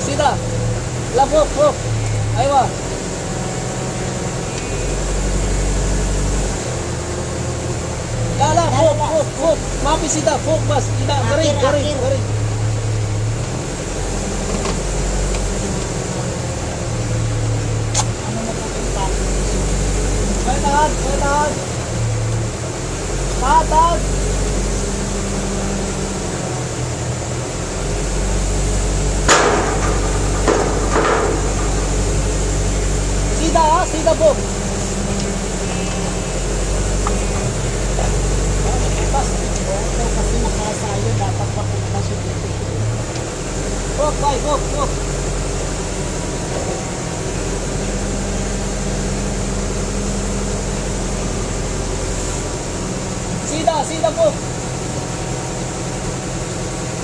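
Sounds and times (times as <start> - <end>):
engine running: 0.0 - 57.0
low machine hum: 0.0 - 57.0
sharp knocks: 29.3 - 32.7.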